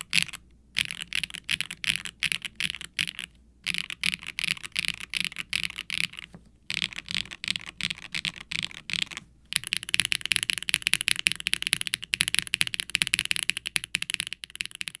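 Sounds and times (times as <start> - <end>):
mechanical keyboard typing: 0.0 - 15.0.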